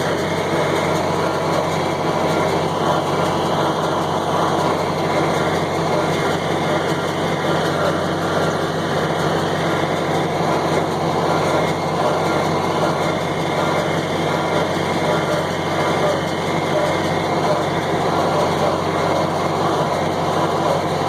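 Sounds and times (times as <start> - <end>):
baler working: 0.0 - 21.0
tractor engine under load: 0.0 - 21.0.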